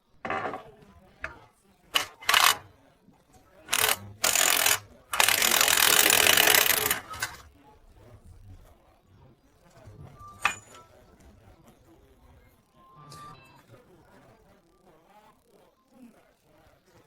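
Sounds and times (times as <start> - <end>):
mechanical rattling and grinding: 2.0 - 2.7, 3.7 - 7.5.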